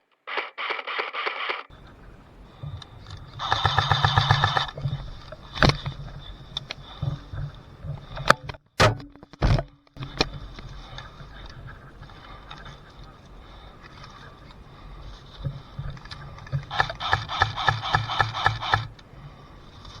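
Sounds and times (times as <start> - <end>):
low steady rumble: 1.7 - 20.0
airsoft gun firing burst: 3.4 - 4.8, 16.7 - 19.0
sharp cracks or knocks: 3.4 - 4.8, 8.3 - 10.3.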